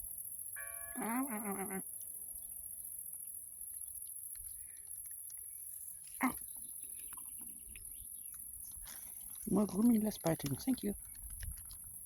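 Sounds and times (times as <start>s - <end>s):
faint small ticks: 3.6s - 9.5s, 10.1s - 12.0s.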